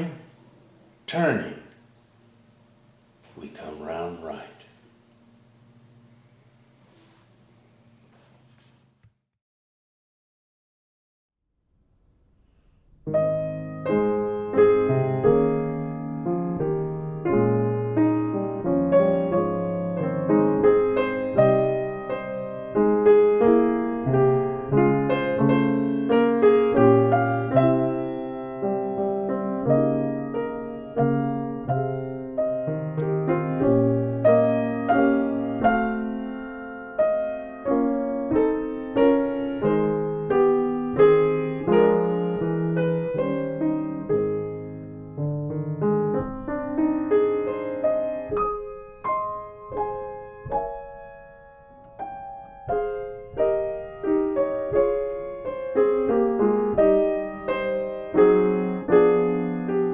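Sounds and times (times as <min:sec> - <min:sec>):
slow solo piano piece: 0:13.0 - 0:59.9.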